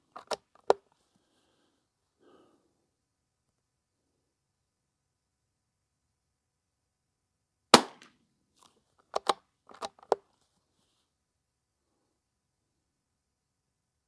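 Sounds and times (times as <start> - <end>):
rifle shot crack: 7.7 - 8.1.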